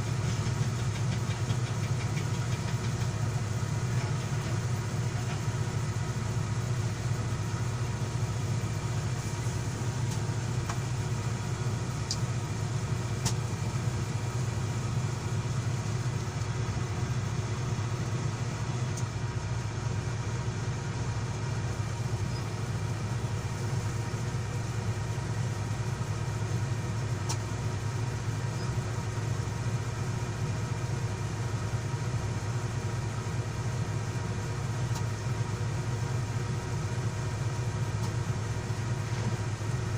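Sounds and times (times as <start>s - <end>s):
excavator diesel engine running: 0.0s - 39.9s.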